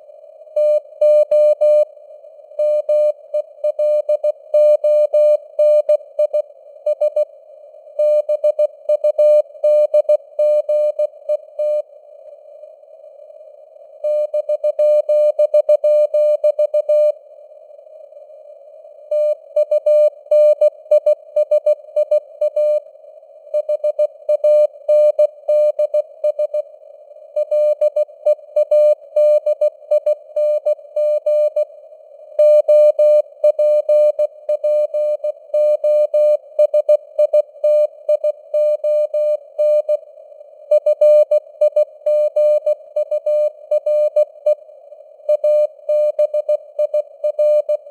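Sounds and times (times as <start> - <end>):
morse code beeps: 45.3 - 47.8.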